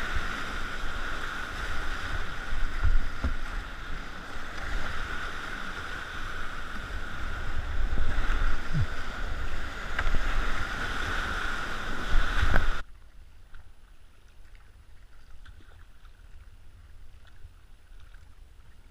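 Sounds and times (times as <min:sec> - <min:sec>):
rushing whitewater: 0:00.0 - 0:12.8.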